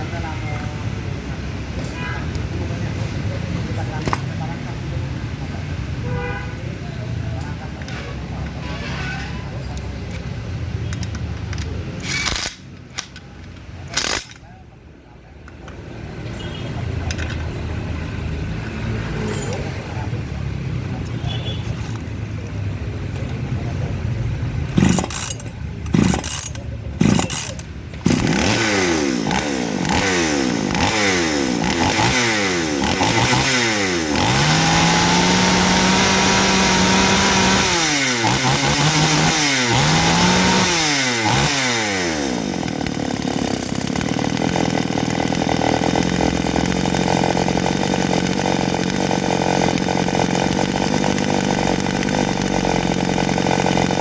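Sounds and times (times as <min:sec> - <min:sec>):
chainsaw revving and idling: 0:03.7 - 0:04.7, 0:11.6 - 0:15.7, 0:23.1 - 0:54.0.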